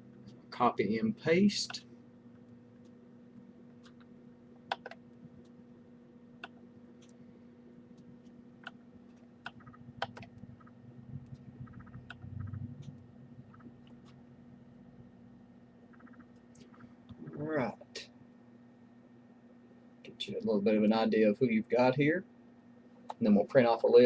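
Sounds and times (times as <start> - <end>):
steady low hum: 0.0 - 24.0
mouse and keyboard clicks: 4.7 - 5.0, 9.4 - 10.7, 11.3 - 14.2, 15.9 - 16.8.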